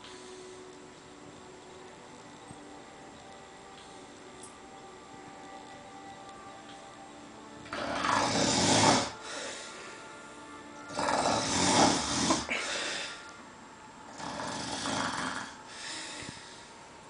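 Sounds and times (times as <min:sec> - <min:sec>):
quiet breath: 0:00.0 - 0:00.9, 0:09.1 - 0:10.8, 0:12.2 - 0:13.4, 0:15.6 - 0:17.0
man snoring heavily: 0:07.7 - 0:09.6, 0:10.9 - 0:13.2, 0:14.1 - 0:16.2.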